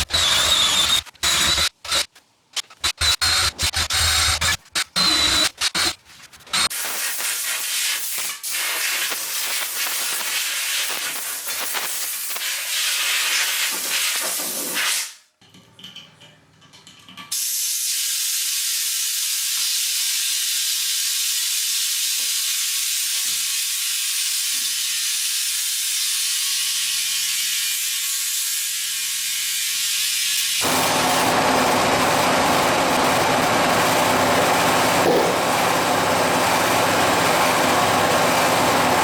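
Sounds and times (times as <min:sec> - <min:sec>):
compressed air hissing: 0:06.7 - 0:15.1.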